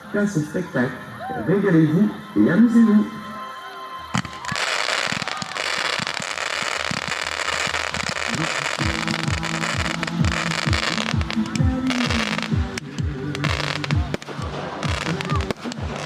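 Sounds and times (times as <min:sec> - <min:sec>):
fireworks crackling: 0:04.0 - 0:16.0
pulsing low music beat: 0:06.3 - 0:16.0.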